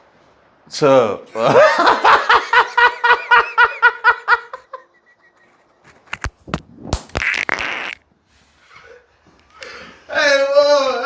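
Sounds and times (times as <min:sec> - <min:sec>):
person laughing: 0:01.4 - 0:05.4.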